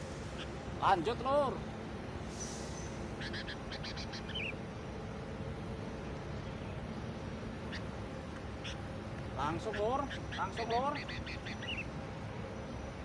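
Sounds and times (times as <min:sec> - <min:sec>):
outdoor background noise: 0:00.0 - 0:13.0
small bird chirping: 0:02.3 - 0:04.6, 0:08.6 - 0:08.8, 0:09.5 - 0:12.0.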